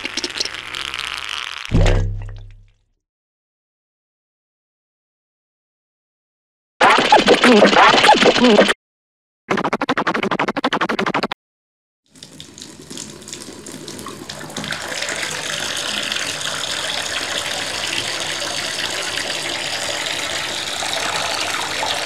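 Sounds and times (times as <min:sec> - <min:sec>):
liquid splashing into water: 0:01.7 - 0:02.8.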